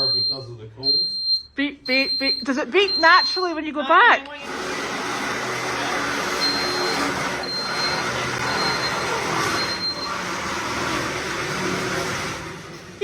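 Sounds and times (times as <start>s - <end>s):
reverse warning beeps: 0.0s - 3.6s, 6.3s - 10.7s
small vehicle running noise: 4.4s - 13.0s.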